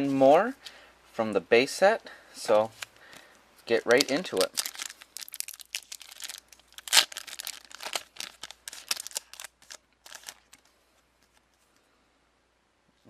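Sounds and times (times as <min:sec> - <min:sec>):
plastic wrapper tearing and crinkling: 0:03.8 - 0:11.5.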